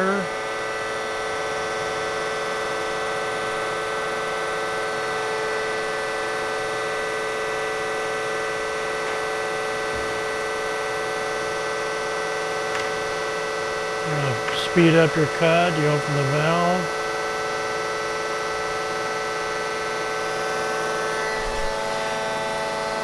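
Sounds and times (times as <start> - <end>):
bandsaw machine hum: 11.6 - 17.1.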